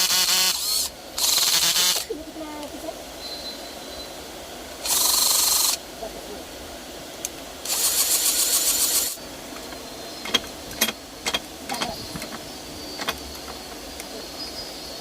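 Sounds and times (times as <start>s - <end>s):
cordless drill running: 0.0s - 2.1s, 4.8s - 5.8s, 7.6s - 9.2s
tool handling clicks and knocks: 9.5s - 13.8s.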